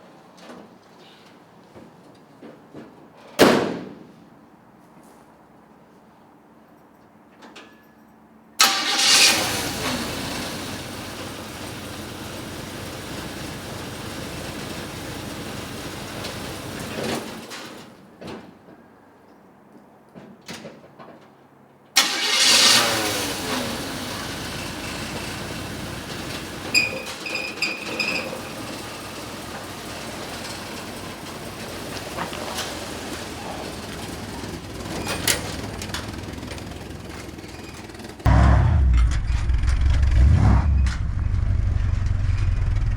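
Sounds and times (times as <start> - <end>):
truck engine starting and running: 8.6 - 17.8, 22.0 - 42.9.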